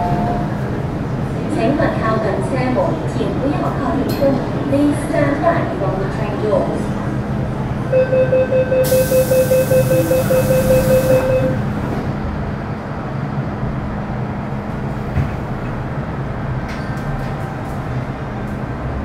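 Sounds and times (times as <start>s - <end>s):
steady hum inside train carriage: 0.0s - 19.0s
door-closing warning beeps: 8.0s - 11.6s.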